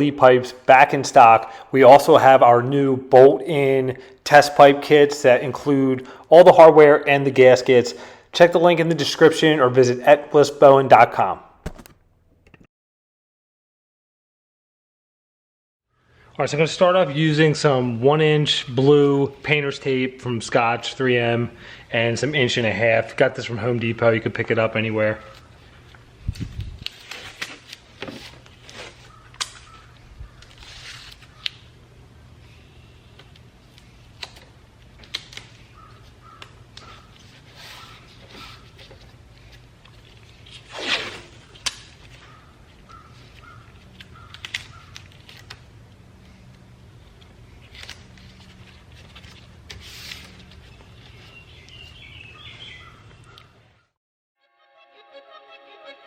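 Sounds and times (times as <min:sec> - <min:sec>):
tape tearing rip: 0:11.6 - 0:12.0, 0:26.8 - 0:29.8, 0:30.4 - 0:31.6, 0:40.4 - 0:42.1, 0:44.2 - 0:45.7, 0:47.7 - 0:48.4
masking tape pulled off roll: 0:30.4 - 0:31.6, 0:40.2 - 0:42.1
birds chirping: 0:42.2 - 0:45.0, 0:50.7 - 0:53.9
music: 0:54.4 - 0:56.0.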